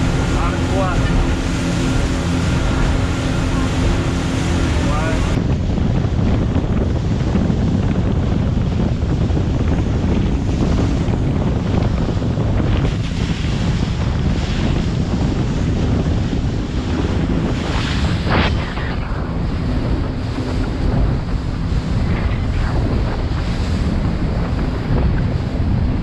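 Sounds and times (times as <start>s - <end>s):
rushing water: 0.0s - 5.4s
boat engine noise: 0.0s - 26.0s
wind buffeting microphone: 0.0s - 26.0s.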